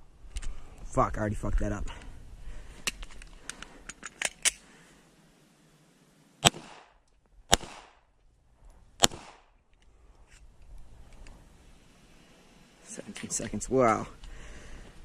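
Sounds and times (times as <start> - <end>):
pistol shots: 6.4 - 8.1, 9.0 - 9.5.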